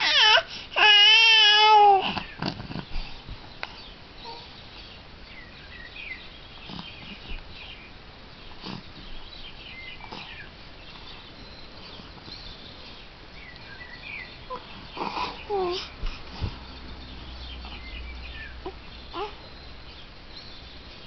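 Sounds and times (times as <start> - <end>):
infant snuffly breaths: 8.6 - 8.9, 14.7 - 16.7
infant squeaks: 19.1 - 19.4.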